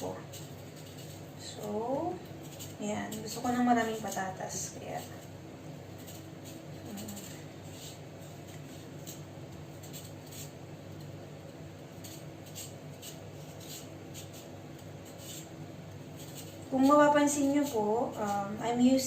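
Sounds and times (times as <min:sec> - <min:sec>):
knife scraping potato: 0:00.0 - 0:19.0.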